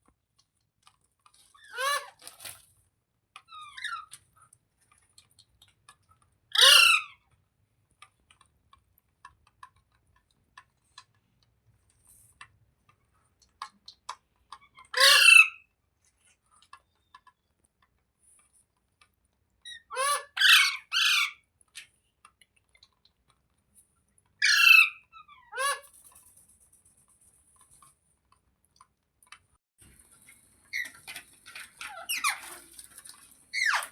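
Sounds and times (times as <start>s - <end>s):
parakeet squawking: 6.6s - 7.1s, 14.9s - 15.6s, 19.7s - 21.4s, 24.4s - 25.8s.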